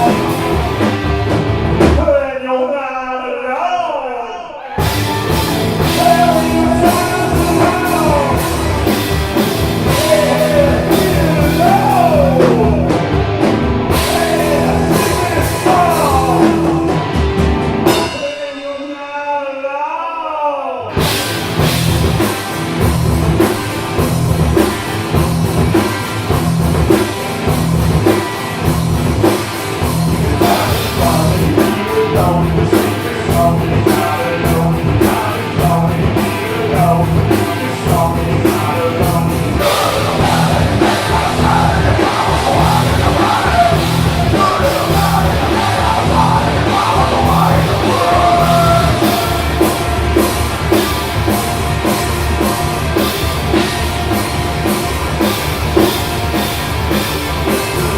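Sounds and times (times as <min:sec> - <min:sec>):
drum kit beat: 0:00.0 - 0:02.2, 0:04.8 - 0:19.0, 0:20.9 - 0:57.9
live rock music: 0:00.0 - 0:02.6, 0:04.6 - 0:19.7, 0:20.9 - 0:57.9
melodic line or voice: 0:05.8 - 0:09.1, 0:09.7 - 0:18.7, 0:38.9 - 0:50.1.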